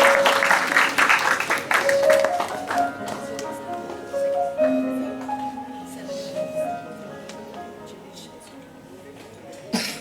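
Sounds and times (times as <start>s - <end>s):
audience applause: 0.0s - 3.4s.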